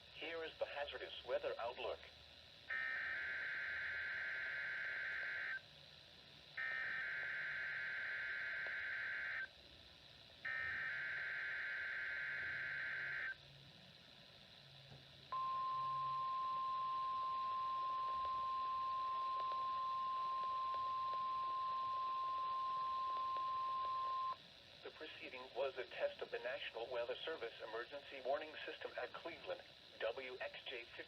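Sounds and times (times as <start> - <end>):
steady warning alarm tone: 2.7 - 5.6, 6.6 - 9.5, 10.4 - 13.4, 15.3 - 24.5.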